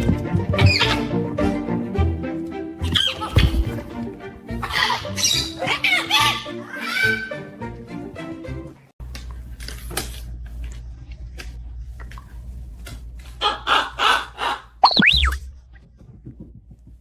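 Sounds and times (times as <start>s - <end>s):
parrot squawking: 4.6s - 7.5s, 13.4s - 15.4s
parrot whistle: 14.8s - 15.4s.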